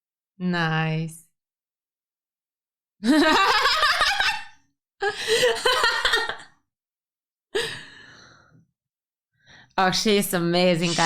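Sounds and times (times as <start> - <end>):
person's voice bursts: 10.7 - 11.0.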